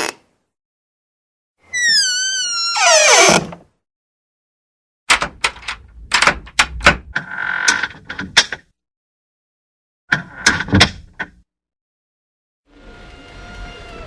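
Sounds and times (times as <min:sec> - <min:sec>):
door hinge squeak: 0:01.7 - 0:03.6.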